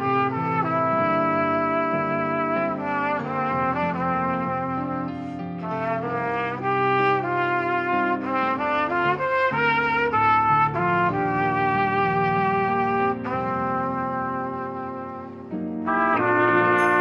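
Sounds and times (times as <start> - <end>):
recorded backing track: 0.0 - 17.0
trumpets playing in harmony: 0.0 - 17.0.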